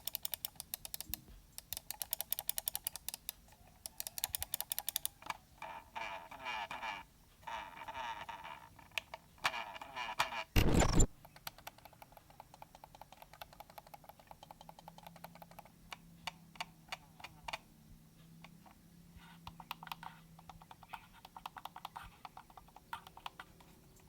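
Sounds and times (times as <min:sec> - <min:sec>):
mouse buttons clicking: 0:10.6 - 0:11.9.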